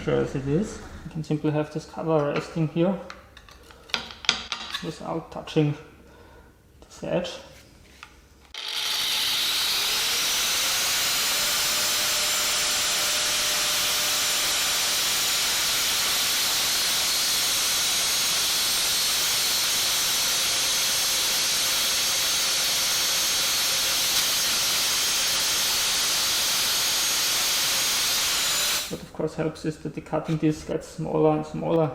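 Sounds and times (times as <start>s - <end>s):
angle grinder cutting steel: 8.5s - 29.0s.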